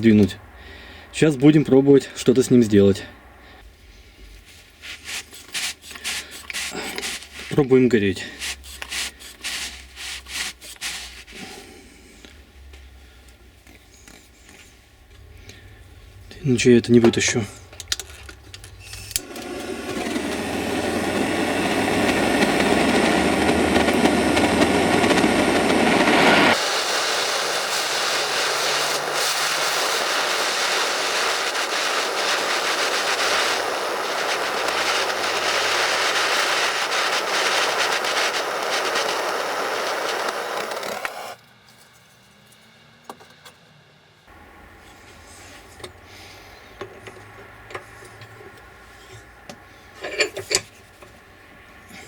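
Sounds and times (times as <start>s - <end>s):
heating tool blowing: 4.8s - 11.9s, 19.0s - 41.4s.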